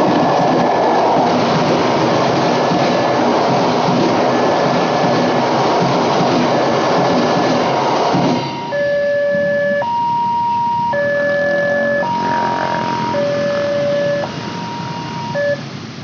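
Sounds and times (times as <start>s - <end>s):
train rumbling over crossing: 0.0s - 16.0s
two-tone crossing warning siren: 8.4s - 15.9s.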